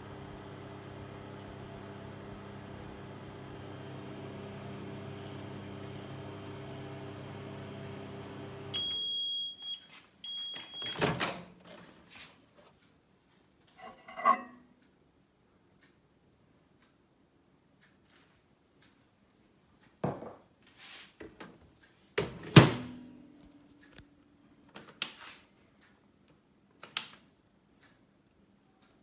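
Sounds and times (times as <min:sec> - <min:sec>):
microwave oven humming: 0:00.0 - 0:11.8.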